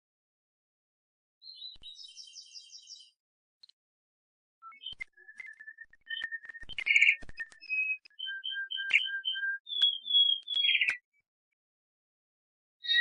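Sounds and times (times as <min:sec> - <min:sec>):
canary singing whistled rolls: 0:04.7 - 0:11.0.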